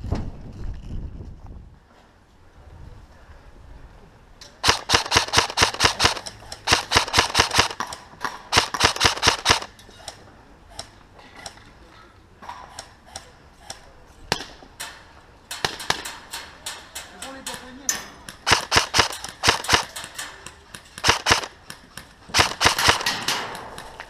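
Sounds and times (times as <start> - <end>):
airsoft gun rapid bursts: 4.6 - 7.8, 8.5 - 9.7, 18.4 - 20.0, 21.0 - 21.6, 22.3 - 23.6
faint single shots: 18.4 - 20.0, 21.0 - 21.6.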